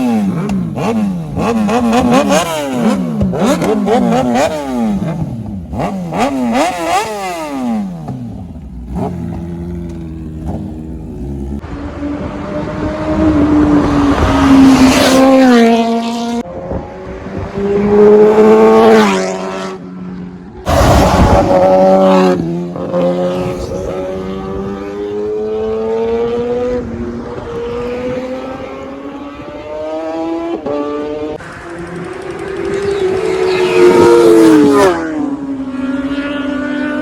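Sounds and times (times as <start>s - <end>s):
motorcycle engine revving past: 20.7s - 37.0s.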